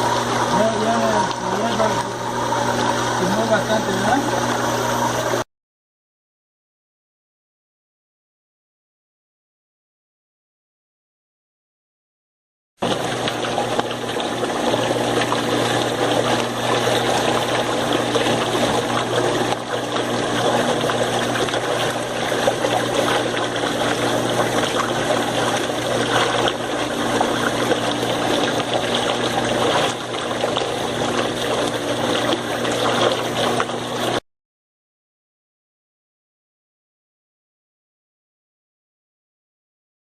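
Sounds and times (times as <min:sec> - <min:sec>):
water pump motor hum: 0:00.0 - 0:05.5, 0:12.8 - 0:34.2
rushing water: 0:12.8 - 0:34.2.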